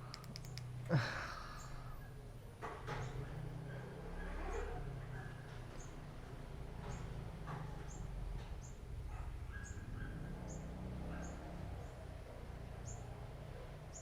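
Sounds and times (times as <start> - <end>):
small bird chirping: 6.8 - 14.0.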